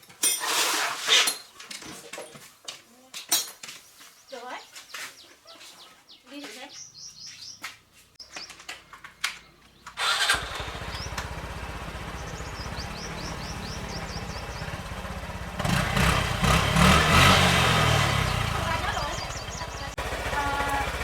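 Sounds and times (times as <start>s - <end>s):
birds chirping: 3.7s - 21.0s
motorcycle engine starting and idling: 8.4s - 21.0s
motorcycle engine revving: 9.9s - 21.0s.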